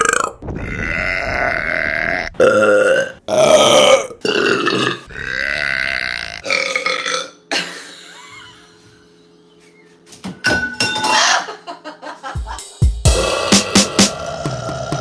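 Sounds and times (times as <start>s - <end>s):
woman burping loudly: 2.4s - 7.6s.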